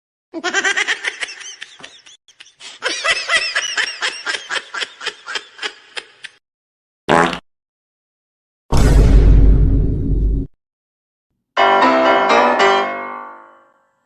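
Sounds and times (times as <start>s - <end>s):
high-pitched giggling laugh: 0.4s - 6.4s.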